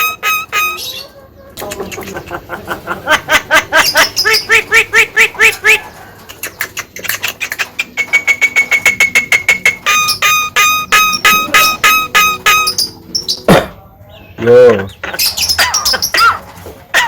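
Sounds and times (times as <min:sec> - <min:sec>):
myna chattering: 0:08.7 - 0:13.0.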